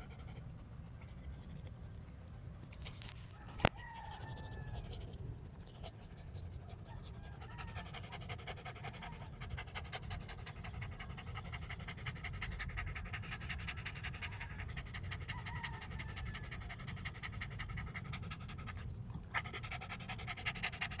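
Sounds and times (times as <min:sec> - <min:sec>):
dogs panting: 0:00.0 - 0:21.0.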